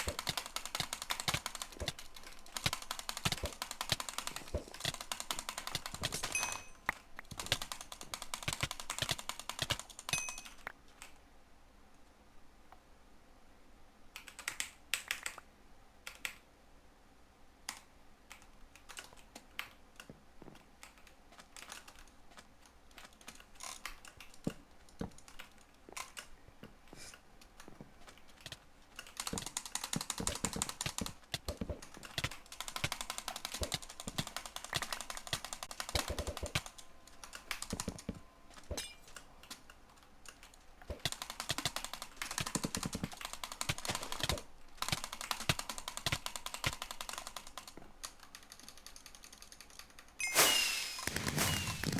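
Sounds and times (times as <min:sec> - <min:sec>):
keyboard typing: 0:00.0 - 0:11.2, 0:20.8 - 0:50.2.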